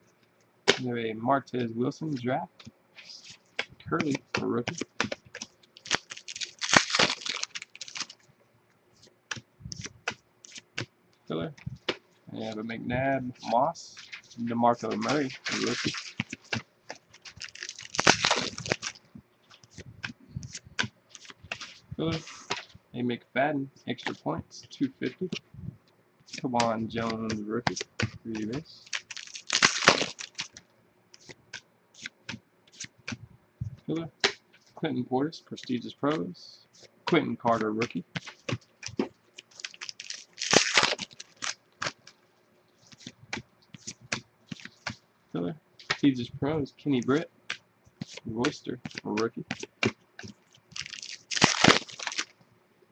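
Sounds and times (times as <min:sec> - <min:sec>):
papery rustle: 0:03.0 - 0:08.2, 0:11.7 - 0:22.8, 0:26.3 - 0:30.6, 0:37.8 - 0:42.2, 0:48.9 - 0:52.3
trading cards clicking and tapping: 0:03.5 - 0:06.4, 0:09.3 - 0:10.9, 0:24.0 - 0:24.2, 0:26.3 - 0:30.6, 0:36.8 - 0:40.3, 0:47.5 - 0:50.8
cards clicking: 0:03.6 - 0:08.2, 0:14.8 - 0:22.7, 0:26.3 - 0:30.6, 0:47.5 - 0:52.3
foil wrapper crinkling and tearing: 0:05.4 - 0:08.2, 0:14.9 - 0:19.0, 0:28.4 - 0:30.6, 0:38.8 - 0:42.1, 0:50.2 - 0:52.3.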